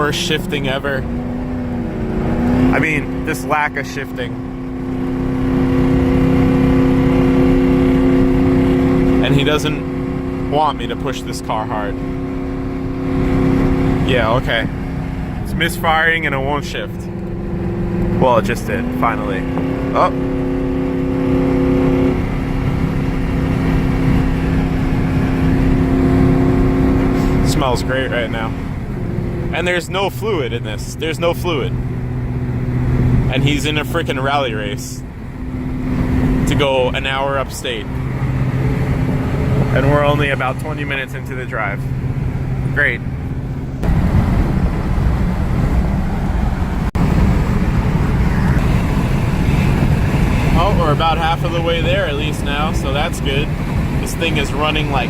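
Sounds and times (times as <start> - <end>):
car engine drone from inside cabin: 0.0 - 55.0
road and wind noise: 0.0 - 55.0
high-pitched whine: 47.1 - 53.2.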